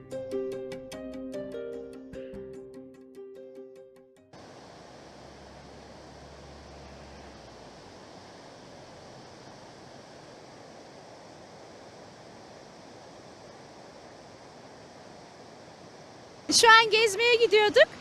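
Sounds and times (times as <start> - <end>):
waterfall rushing: 4.4 - 18.0.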